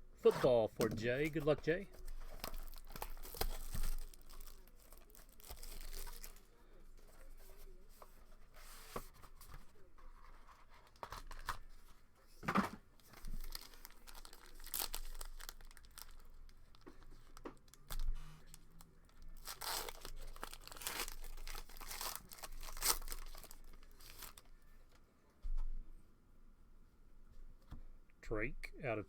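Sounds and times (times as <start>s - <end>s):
plastic wrapper crinkling: 0.8s - 6.6s, 10.2s - 11.9s, 13.0s - 24.7s
packaging being torn open: 2.1s - 6.4s, 13.2s - 18.6s, 19.4s - 24.5s.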